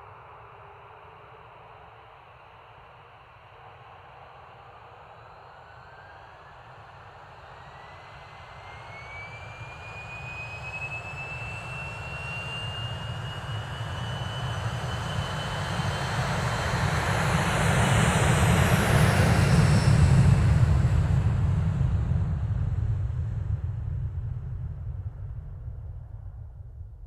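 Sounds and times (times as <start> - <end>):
jet engine whine: 0.0 - 27.0
jet engine roar: 8.5 - 27.0.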